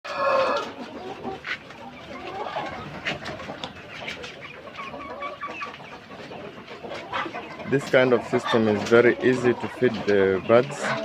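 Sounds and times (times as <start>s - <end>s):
loud chicken call: 0.1s - 0.8s
chickens clucking: 0.1s - 11.0s.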